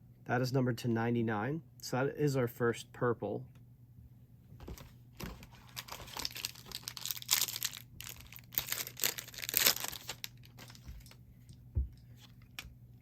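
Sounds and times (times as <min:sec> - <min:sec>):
foil wrapper crinkling and tearing: 0:05.2 - 0:11.2.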